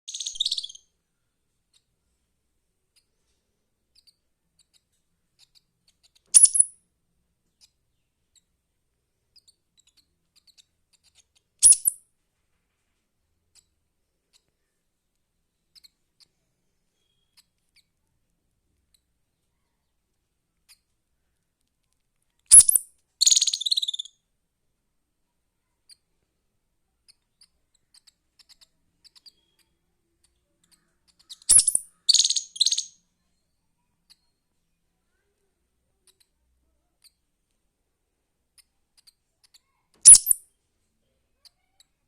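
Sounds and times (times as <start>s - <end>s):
squirrel chirping: 0.0s - 0.8s, 3.9s - 6.8s, 9.4s - 12.0s, 22.5s - 24.2s, 27.1s - 33.0s, 38.6s - 40.4s.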